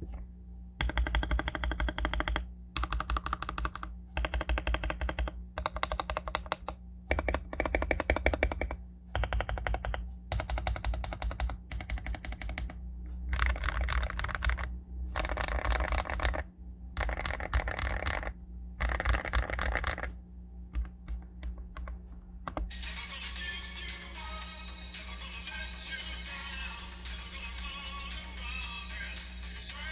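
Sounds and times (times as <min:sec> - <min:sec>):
typing on mechanical keyboard: 0:00.8 - 0:20.1, 0:20.7 - 0:22.7.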